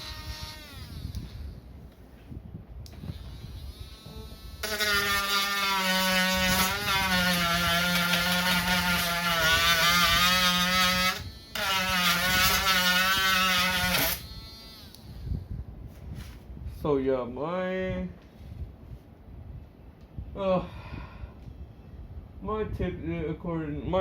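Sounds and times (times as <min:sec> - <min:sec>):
rotary tool sanding plastic: 0:00.0 - 0:01.5, 0:03.0 - 0:15.2.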